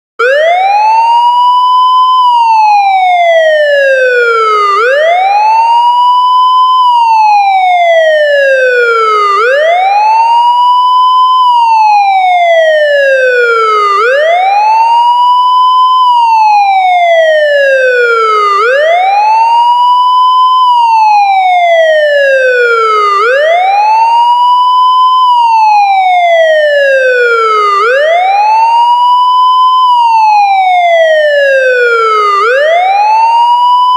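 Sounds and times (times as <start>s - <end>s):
police siren wailing: 0.2s - 33.9s.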